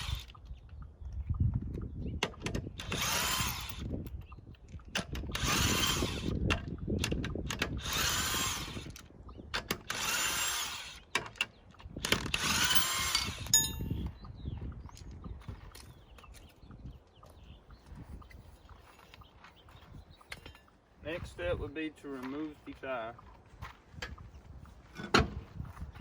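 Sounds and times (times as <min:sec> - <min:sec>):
impact wrench spinning: 0:12.1 - 0:13.8
short metallic ring: 0:13.5 - 0:14.0.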